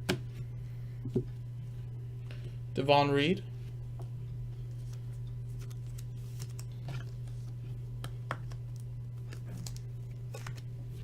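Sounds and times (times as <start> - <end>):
low electrical hum: 0.0 - 11.0
rustling of trading cards: 4.6 - 11.0.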